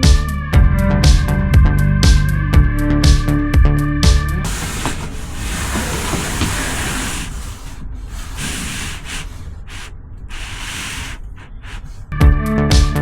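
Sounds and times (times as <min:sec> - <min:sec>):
music with a beat: 0:00.0 - 0:04.4, 0:12.2 - 0:13.0
rough rubbing or scraping: 0:04.4 - 0:12.1.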